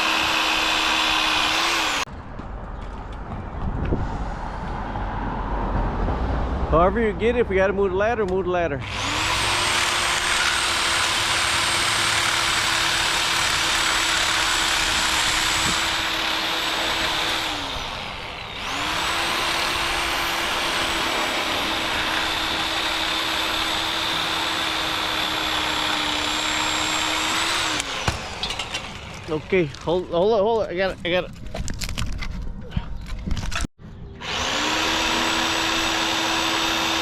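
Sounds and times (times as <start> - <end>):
reciprocating saw cutting branch: 0.0 - 2.1, 8.8 - 28.5, 34.2 - 37.0.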